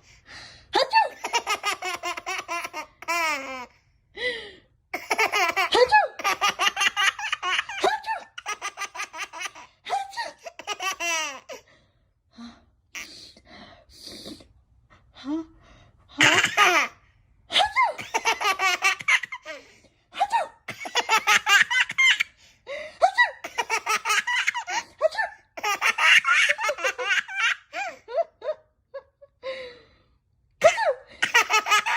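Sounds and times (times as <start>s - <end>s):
baby belly laughing: 0.9s - 3.7s, 5.0s - 11.6s, 16.2s - 19.6s, 25.6s - 28.0s, 31.2s - 31.9s.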